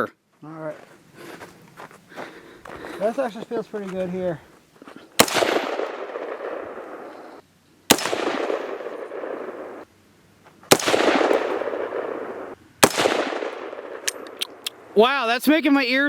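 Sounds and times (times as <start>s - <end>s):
rifle shots with echo: 5.2s - 7.2s, 7.9s - 9.8s, 10.7s - 14.4s.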